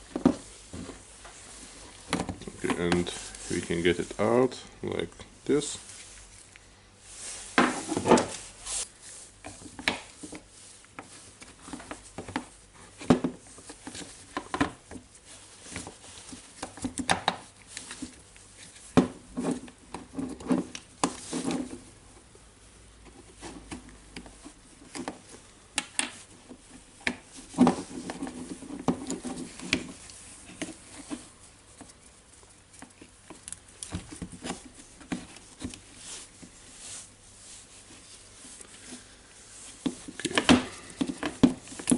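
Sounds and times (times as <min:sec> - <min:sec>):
plastic parts clicking and rubbing: 0:00.0 - 0:04.2, 0:23.1 - 0:36.6, 0:39.6 - 0:41.9.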